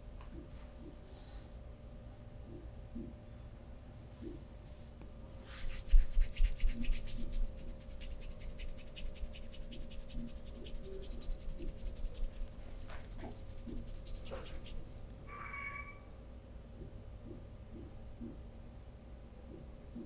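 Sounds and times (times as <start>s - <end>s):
hands rubbing skin: 5.5s - 15.0s.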